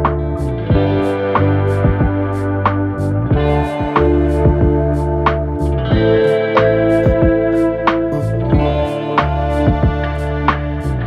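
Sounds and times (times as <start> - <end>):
held chords: 3.4 - 5.2, 8.1 - 10.4.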